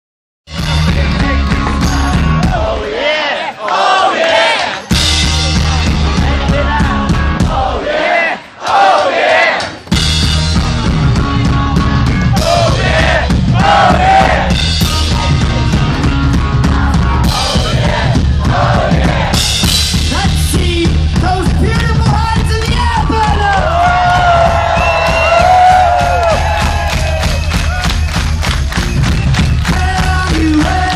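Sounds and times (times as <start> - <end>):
live rock band playing: 0.5 - 2.9, 4.7 - 7.8, 9.8 - 30.9
driving drum kit: 0.5 - 3.0, 4.4 - 7.9, 8.7 - 30.9.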